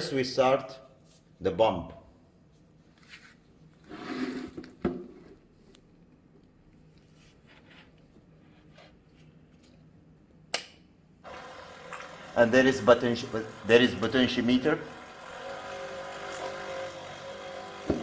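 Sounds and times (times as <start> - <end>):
water pump hiss: 11.3 - 18.0.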